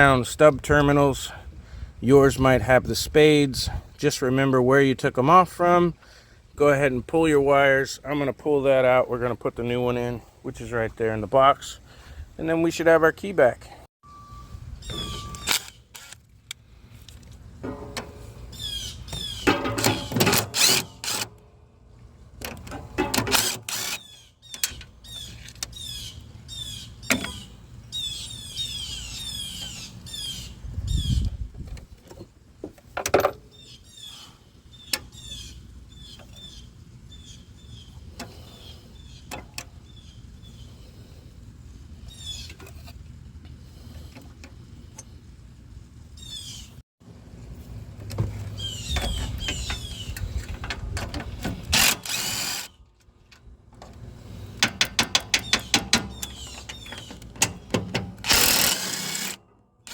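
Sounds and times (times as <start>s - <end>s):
hand tools clanking on metal: 17.6s - 18.5s, 19.2s - 21.4s, 22.4s - 23.9s, 54.5s - 59.9s.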